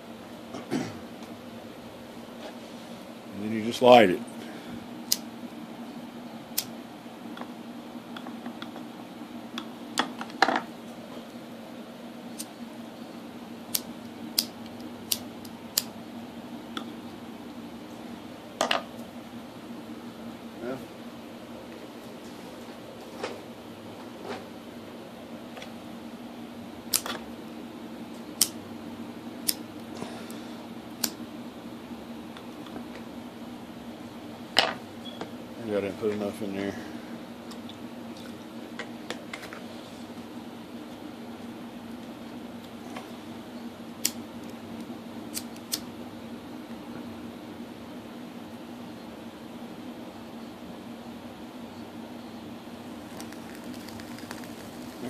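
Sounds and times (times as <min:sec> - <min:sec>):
steady low hum: 0:00.0 - 0:55.0
lighter clicking: 0:13.7 - 0:15.9, 0:28.4 - 0:28.6, 0:29.4 - 0:29.6, 0:44.0 - 0:44.2, 0:45.3 - 0:45.9.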